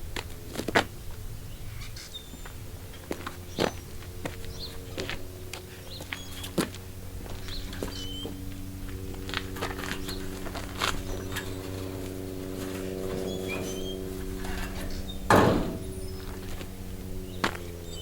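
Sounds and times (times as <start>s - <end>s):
tractor engine running: 2.3s - 18.0s
loud rattling clunk: 9.5s - 17.3s
clicks and knocks: 14.5s - 16.2s.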